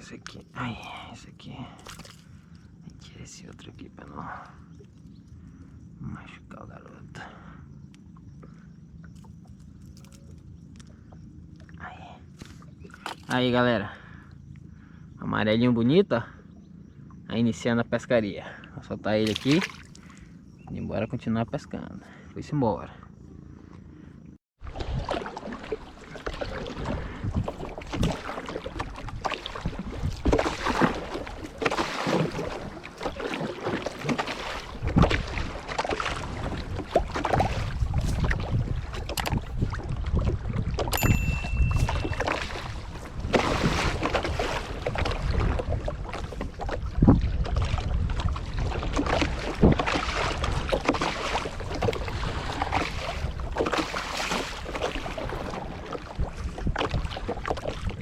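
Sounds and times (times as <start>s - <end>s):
water moving around canoe: 0.0s - 6.0s, 7.8s - 15.1s, 19.2s - 21.0s, 23.0s - 58.0s
wind buffeting microphone: 25.8s - 33.0s, 34.0s - 53.8s, 54.5s - 58.0s.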